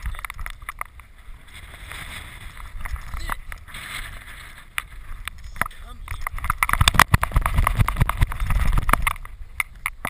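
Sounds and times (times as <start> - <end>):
sharp clicks: 4.8 - 10.0.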